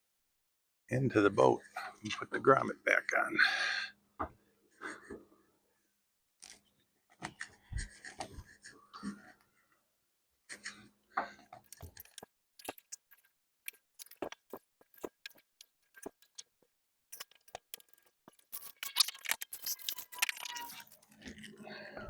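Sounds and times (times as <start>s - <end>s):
cable handling clicks and scrapes: 11.6s - 16.5s, 17.1s - 21.6s.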